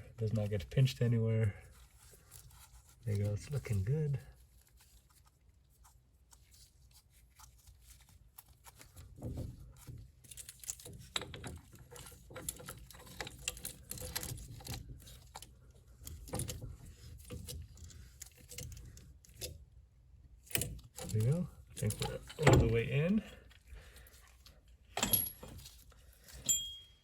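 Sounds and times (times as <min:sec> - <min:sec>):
metallic clicks and scraping: 0:08.4 - 0:19.8, 0:20.4 - 0:23.2.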